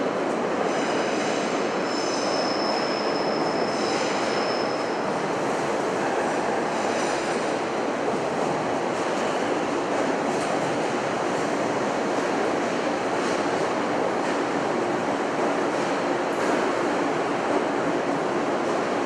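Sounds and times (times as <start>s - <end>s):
train rumbling through station: 0.0s - 19.0s
train wheels squealing: 0.6s - 5.4s.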